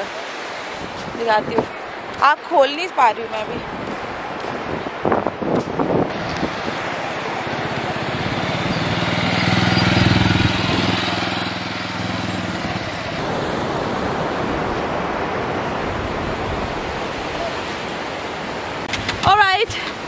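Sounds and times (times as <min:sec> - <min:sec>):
steady rushing noise: 0:00.0 - 0:20.0
vehicle engine passing by: 0:06.1 - 0:14.6.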